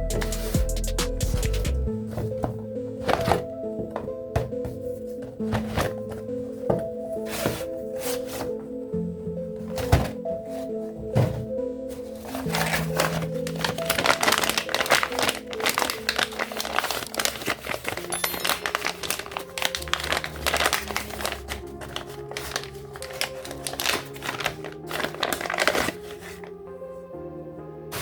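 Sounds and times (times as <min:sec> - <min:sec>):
background music: 0:00.0 - 0:28.0
plastic packaging crinkling: 0:12.2 - 0:26.6.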